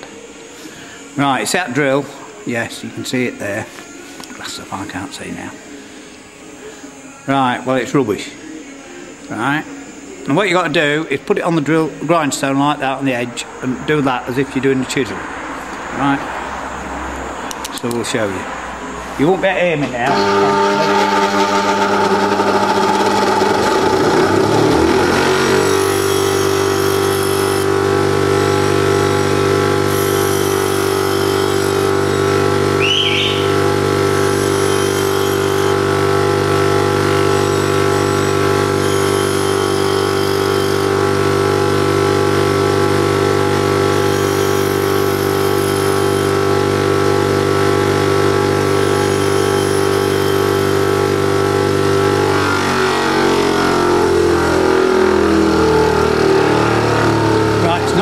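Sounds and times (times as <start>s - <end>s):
bench grinder motor hum: 20.0s - 58.0s
drill bit grinding hiss: 24.4s - 27.8s, 29.0s - 41.4s, 43.6s - 46.8s, 48.4s - 51.4s.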